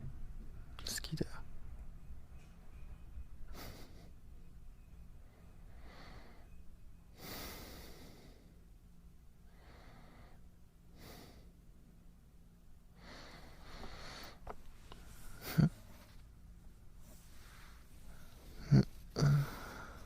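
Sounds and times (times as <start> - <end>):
low steady hum: 0.0 - 20.0
man breathing softly: 5.2 - 8.7, 9.4 - 11.6, 12.9 - 16.2, 16.9 - 20.0.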